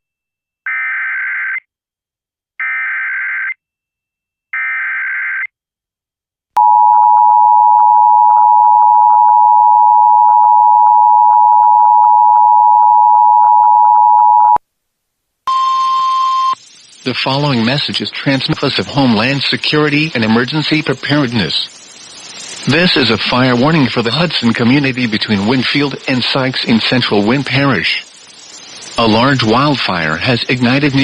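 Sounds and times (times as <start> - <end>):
two-tone attention signal: 15.5 - 16.6
digital data bursts: 15.5 - 31.0.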